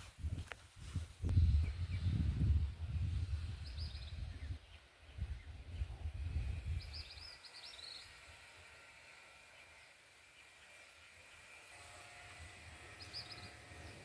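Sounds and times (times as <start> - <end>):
wind buffeting microphone: 0.0 - 7.4
small bird chirping: 3.5 - 8.4, 12.9 - 14.0.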